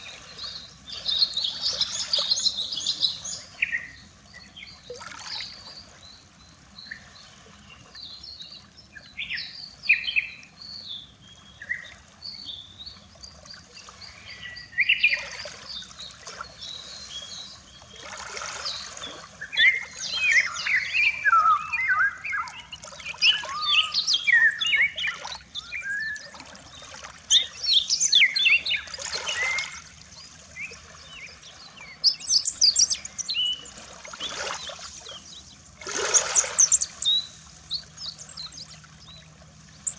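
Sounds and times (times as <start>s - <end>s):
small waves washing onto shore: 13.7s - 21.8s, 26.4s - 39.9s
small birds chirping and singing: 18.6s - 26.3s, 27.3s - 39.9s.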